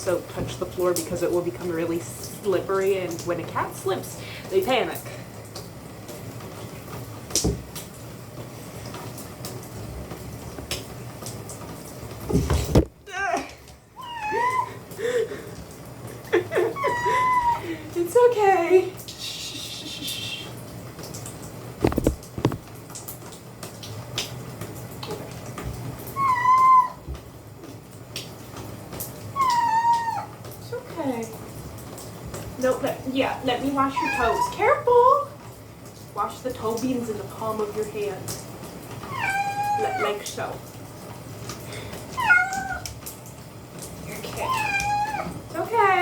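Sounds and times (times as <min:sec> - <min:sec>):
knocks in a bathtub: 0:07.4 - 0:07.7, 0:12.2 - 0:13.0
cat meowing in distress: 0:14.0 - 0:14.7, 0:16.7 - 0:17.6, 0:26.2 - 0:27.0, 0:29.4 - 0:30.3, 0:34.0 - 0:34.5, 0:39.1 - 0:40.2, 0:42.2 - 0:42.9, 0:44.4 - 0:45.4.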